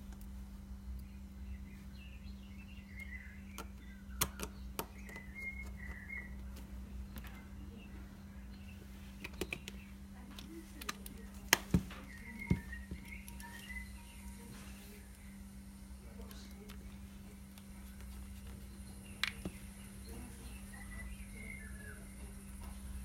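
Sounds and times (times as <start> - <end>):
birds chirping: 0.0 - 23.0
steady low hum: 0.0 - 23.0.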